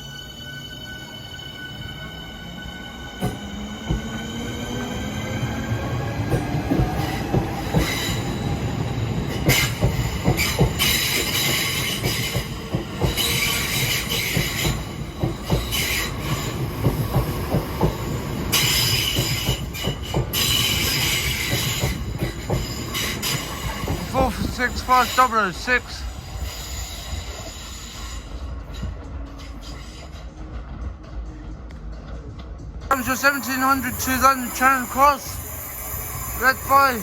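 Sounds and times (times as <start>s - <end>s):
wheels clacking over rail joints: 6.2s - 24.8s.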